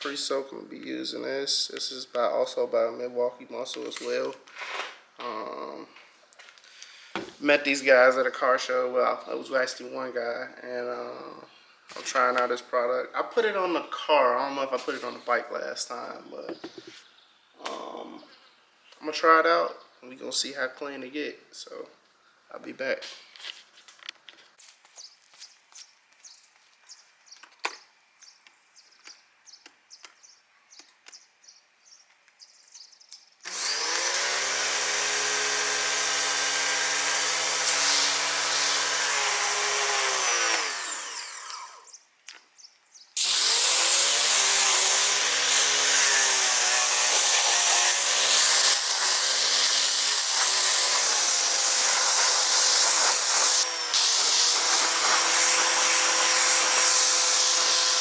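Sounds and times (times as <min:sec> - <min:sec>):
electric pressure washer motor: 0:33.5 - 0:41.9, 0:43.2 - 0:58.0.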